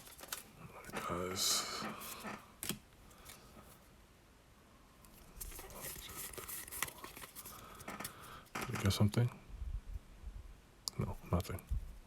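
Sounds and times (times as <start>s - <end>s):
card pack rustling and clicks: 0.0s - 1.1s, 5.1s - 8.9s.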